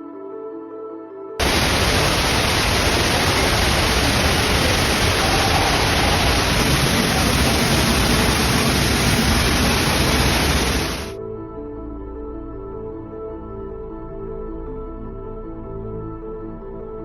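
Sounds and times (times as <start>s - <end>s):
heavy rain pouring: 1.4s - 11.2s.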